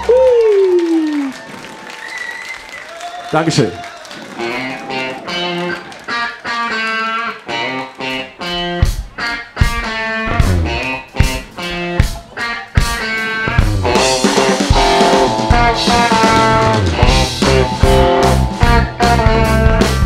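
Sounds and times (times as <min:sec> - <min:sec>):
electric guitar chord riff: 0:06.5 - 0:20.0
bass and drums beat: 0:08.4 - 0:20.0.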